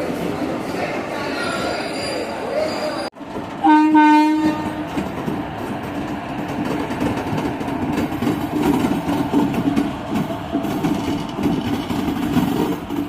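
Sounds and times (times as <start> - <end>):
train horn blast: 3.6 - 4.8.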